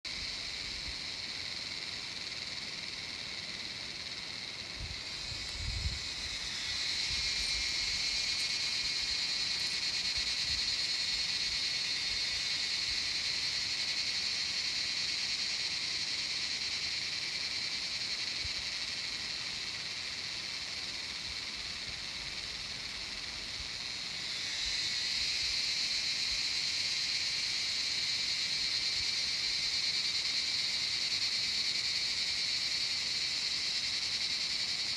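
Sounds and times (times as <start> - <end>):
insects buzzing: 0.1 - 34.9.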